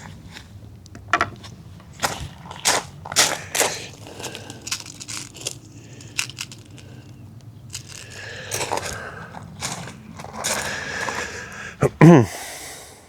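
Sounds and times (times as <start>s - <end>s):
handling clicks and knocks: 0.0s - 11.6s
scraping and rattling: 0.0s - 11.8s.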